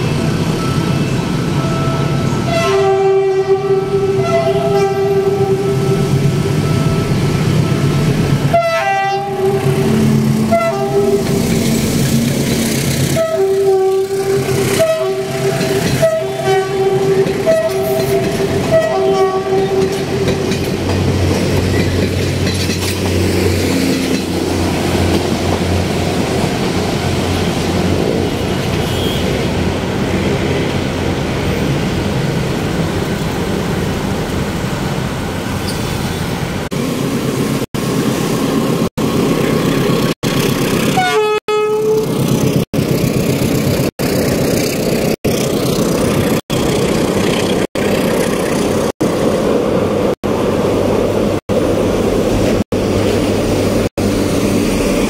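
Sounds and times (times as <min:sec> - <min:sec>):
moving train rumble: 0:00.0 - 0:55.0
train horn blasts: 0:02.5 - 0:06.0, 0:08.5 - 0:11.4, 0:13.1 - 0:20.2, 0:41.0 - 0:42.1.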